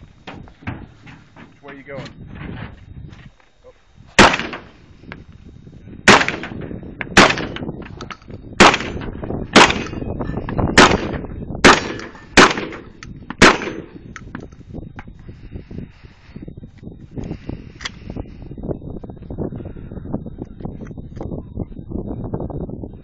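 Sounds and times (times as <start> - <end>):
gunshots with short echo: 4.2 - 4.7, 6.1 - 7.7, 8.6 - 10.0, 10.8 - 14.0.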